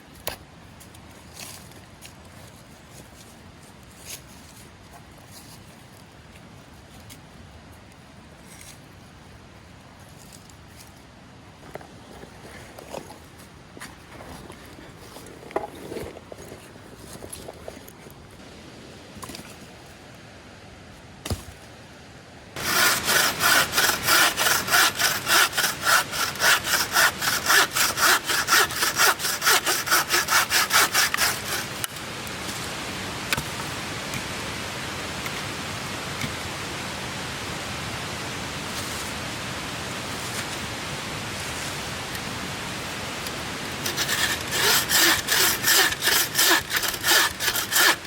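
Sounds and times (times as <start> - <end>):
saw cutting wood: 22.6 - 32.0, 43.8 - 48.0.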